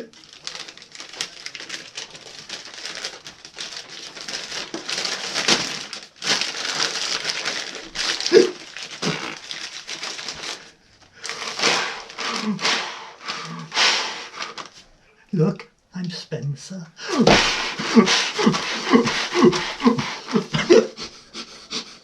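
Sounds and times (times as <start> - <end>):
paper bag crinkling: 0.0 - 14.9, 17.1 - 20.8
heavy breathing into paper bag: 6.3 - 15.3, 17.0 - 22.0.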